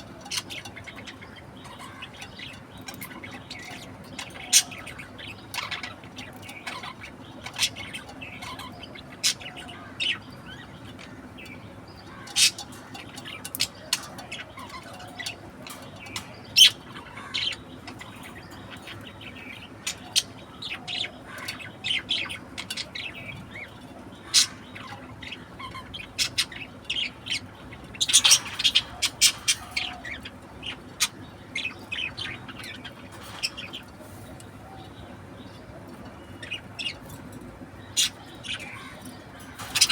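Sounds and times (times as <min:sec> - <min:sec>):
budgerigar chirping and squawking: 0:12.0 - 0:35.6.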